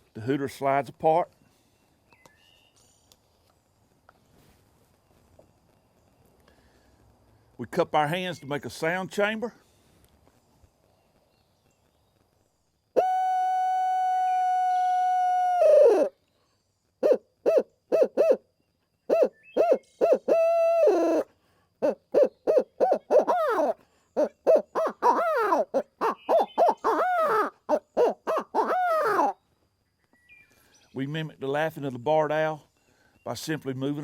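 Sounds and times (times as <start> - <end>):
owl call hoots: 13.0 - 16.2, 17.0 - 18.4, 19.1 - 29.4.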